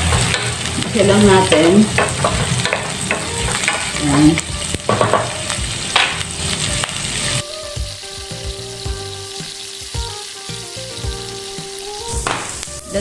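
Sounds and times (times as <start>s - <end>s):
garlic and onion sizzling in oil: 0.0s - 13.0s
spatula tapping against pan: 1.4s - 5.4s.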